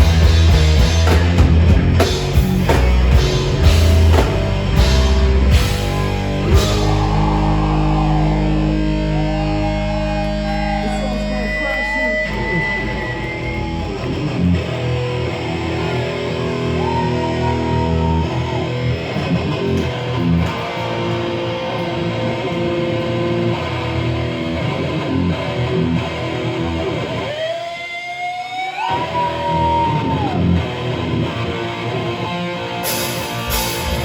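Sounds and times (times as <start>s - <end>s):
electric guitar ringing chords: 0.0s - 28.2s, 30.4s - 34.0s.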